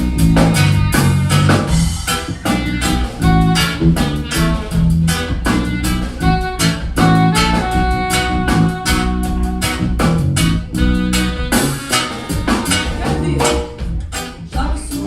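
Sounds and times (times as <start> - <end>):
bass: 0.0 - 15.0
drum kit: 0.0 - 15.0
alto saxophone long notes: 3.2 - 12.9.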